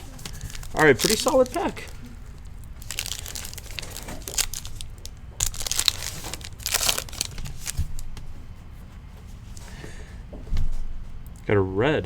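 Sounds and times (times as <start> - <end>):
wrapper tearing and crinkling: 0.0 - 8.1.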